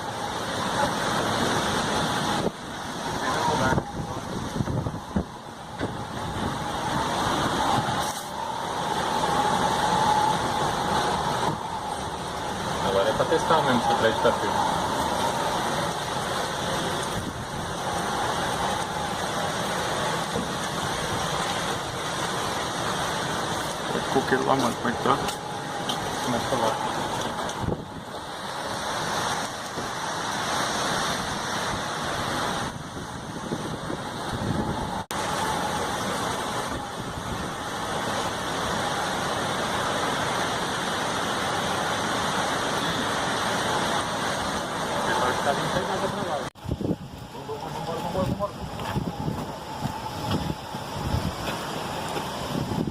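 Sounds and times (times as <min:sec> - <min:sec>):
strong wind buffeting microphone: 0:00.0 - 0:52.9.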